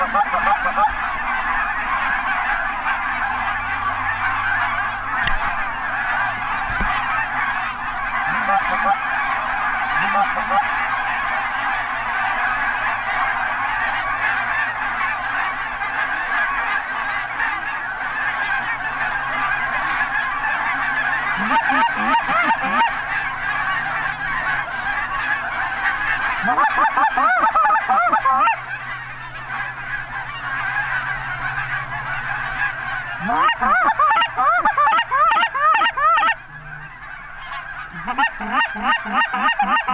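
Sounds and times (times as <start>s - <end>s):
geese honking: 0.0s - 39.9s.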